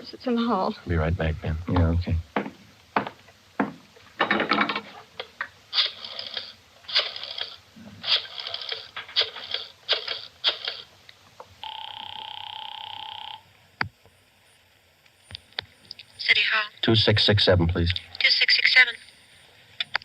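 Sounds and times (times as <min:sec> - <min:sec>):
rotary dial whirring: 0:05.0 - 0:11.0, 0:11.6 - 0:13.5
telephone ringing tone: 0:11.6 - 0:13.5.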